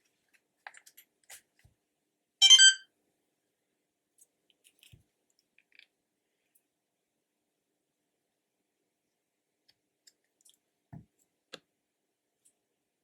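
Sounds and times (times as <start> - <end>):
high electronic beep: 2.4 - 2.8.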